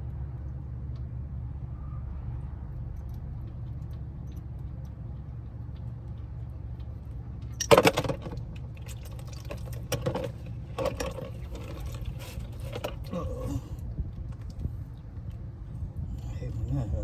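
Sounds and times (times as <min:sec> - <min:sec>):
metal tools clinking and clattering: 0:07.6 - 0:13.3.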